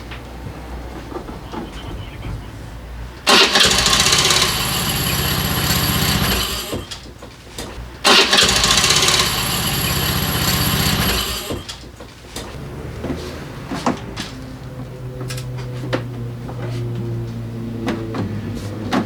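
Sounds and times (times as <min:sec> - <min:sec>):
electric starter engaging: 0:03.2 - 0:07.1, 0:07.9 - 0:11.8
scooter engine running: 0:03.3 - 0:07.0, 0:08.0 - 0:11.7.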